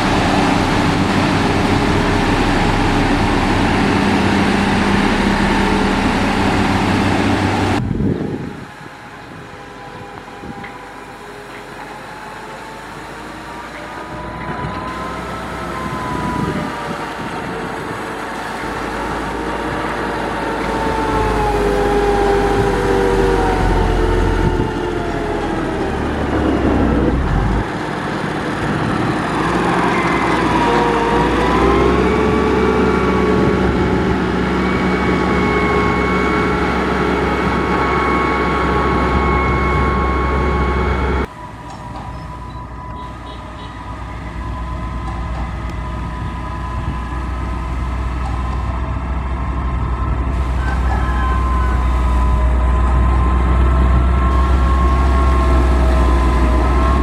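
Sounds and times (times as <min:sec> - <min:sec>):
heavy diesel engine under load: 0:00.0 - 0:57.0.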